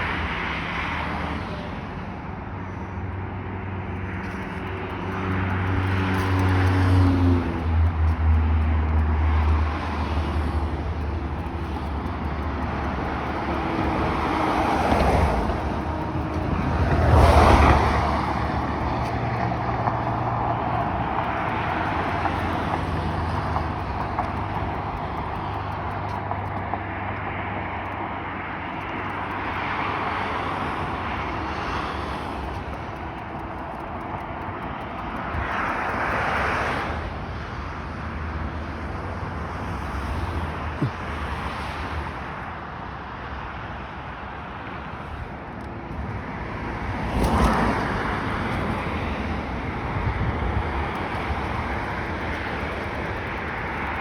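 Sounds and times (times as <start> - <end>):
traffic driving past: 0.0 - 54.0
low engine drone: 1.7 - 36.0.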